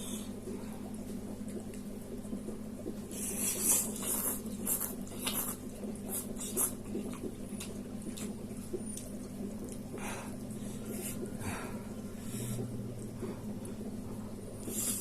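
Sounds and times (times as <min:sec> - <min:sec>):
low steady hum: 0:00.0 - 0:15.0
person chewing and slurping noodles: 0:03.1 - 0:13.5, 0:14.6 - 0:15.0.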